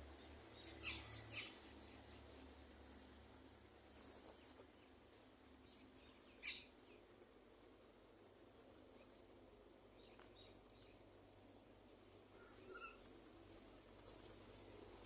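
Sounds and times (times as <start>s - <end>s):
high-pitched bird chirps: 0.6s - 1.6s, 6.3s - 6.7s.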